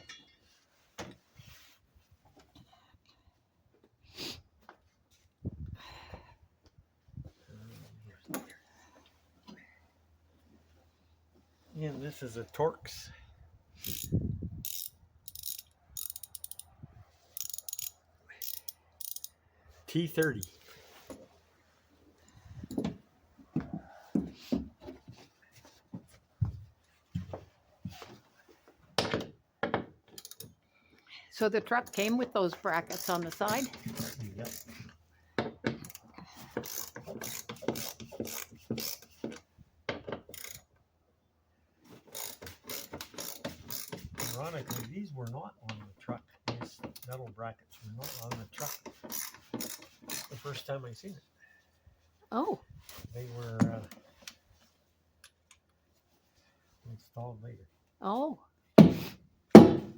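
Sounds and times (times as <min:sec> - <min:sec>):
tools knocking and clicking: 0:13.8 - 0:16.7, 0:17.4 - 0:19.4, 0:29.0 - 0:30.6, 0:35.4 - 0:40.6, 0:42.1 - 0:44.9, 0:48.1 - 0:50.3
hand tools knocking and clicking: 0:35.4 - 0:40.6
loud thump: 0:59.6 - 0:59.9.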